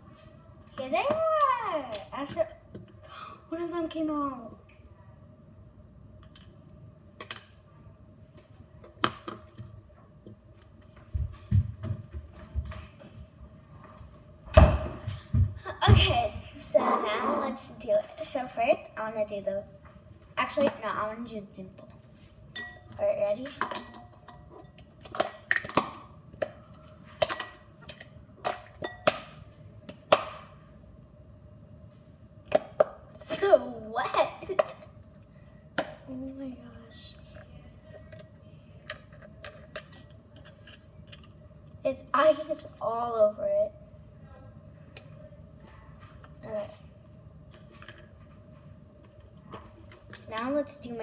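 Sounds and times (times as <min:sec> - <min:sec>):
faint steady hum: 0:00.0 - 0:51.0.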